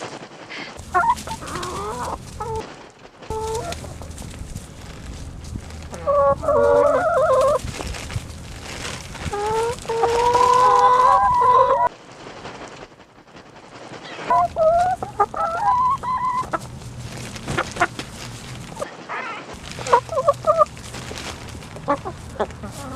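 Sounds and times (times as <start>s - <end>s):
chickens calling: 0.5s - 11.9s, 14.0s - 22.9s.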